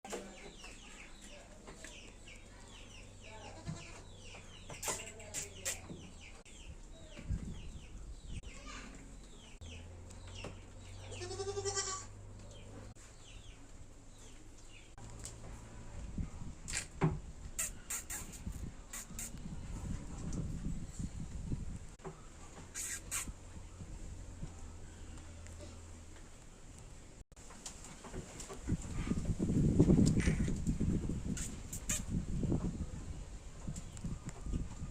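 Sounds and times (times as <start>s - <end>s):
parrot chirping: 22.7s - 23.3s.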